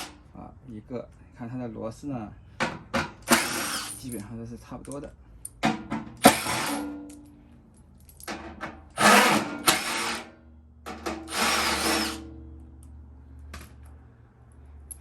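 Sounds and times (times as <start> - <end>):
cordless drill running: 9.0 - 10.2, 11.3 - 12.2.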